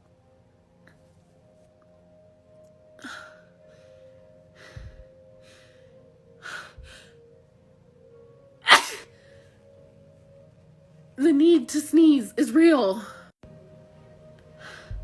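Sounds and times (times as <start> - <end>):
woman sneezing: 8.6 - 9.1.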